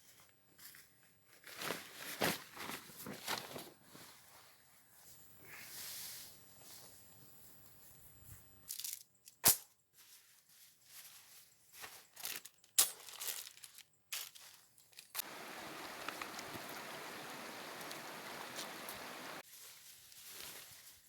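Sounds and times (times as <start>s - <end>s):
handling clicks and rustles: 15.2s - 19.4s
rushing water: 15.2s - 19.4s.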